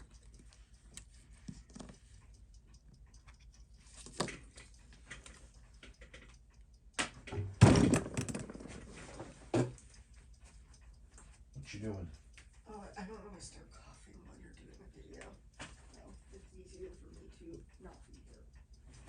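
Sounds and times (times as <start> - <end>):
small parts and tools clicking: 0.0 - 12.7.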